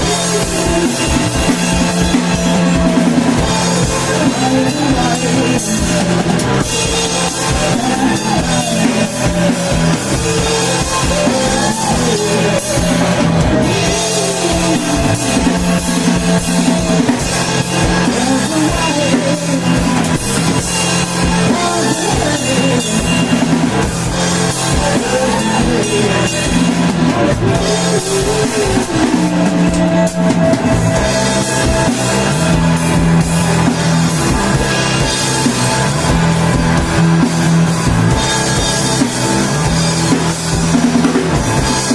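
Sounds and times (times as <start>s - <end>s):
drum kit beat: 0.0s - 41.9s
rock band playing live: 0.0s - 41.9s.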